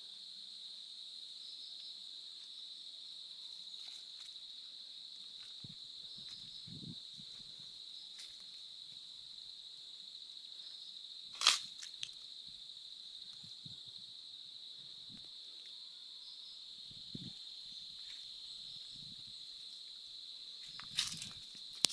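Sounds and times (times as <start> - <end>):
insects droning: 0.0 - 21.9
sharp rustle: 11.3 - 12.2, 20.6 - 21.9.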